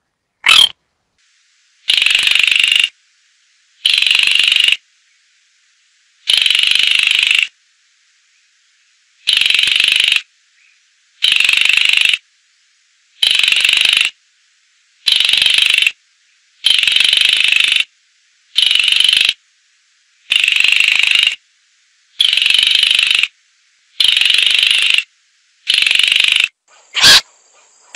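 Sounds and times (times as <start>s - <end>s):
bird rattling call: 0.4s - 0.7s, 1.9s - 2.9s, 3.8s - 4.8s, 6.3s - 7.5s, 9.2s - 10.3s, 11.2s - 12.2s, 13.2s - 14.2s, 15.0s - 16.0s, 16.6s - 17.9s, 18.6s - 19.4s, 20.3s - 21.4s, 22.2s - 23.3s, 24.0s - 27.3s.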